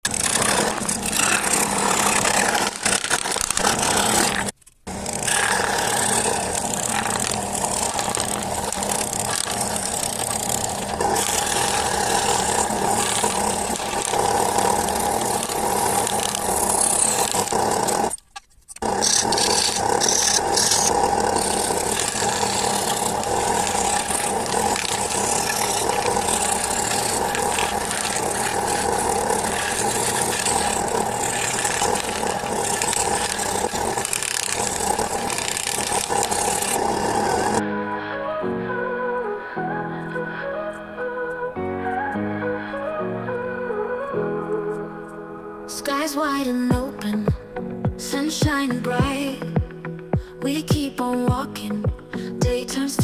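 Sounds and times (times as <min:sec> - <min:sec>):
power tool shaping wood: 0:00.0 - 0:37.6.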